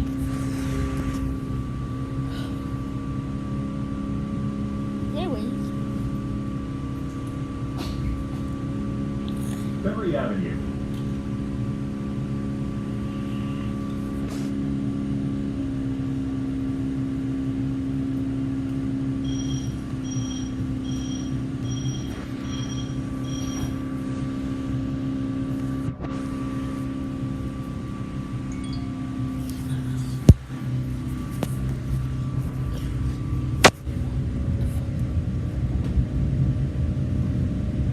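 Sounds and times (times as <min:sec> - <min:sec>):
train interior hum: 0:00.0 - 0:16.3, 0:18.7 - 0:37.9
short electronic beeps: 0:19.2 - 0:23.8.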